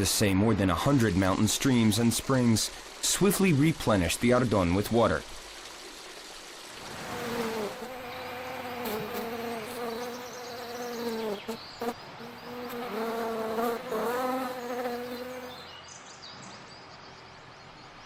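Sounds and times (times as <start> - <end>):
insect buzzing: 6.8 - 15.8.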